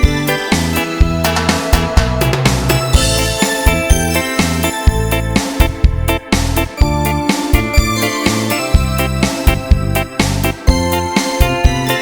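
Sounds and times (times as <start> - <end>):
keyboard and synth chords: 0.0 - 12.0
drum beat: 1.0 - 7.9.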